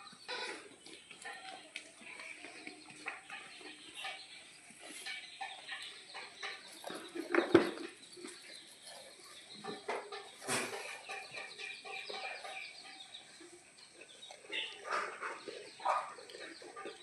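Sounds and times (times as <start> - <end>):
chickens clucking: 0.0 - 17.0.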